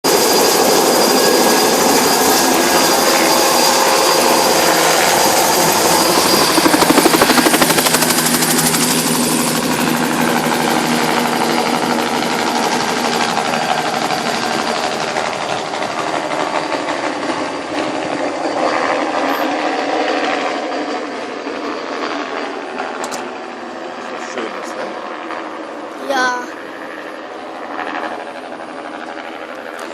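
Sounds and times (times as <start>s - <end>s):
helicopter flying past: 0.1s - 29.9s.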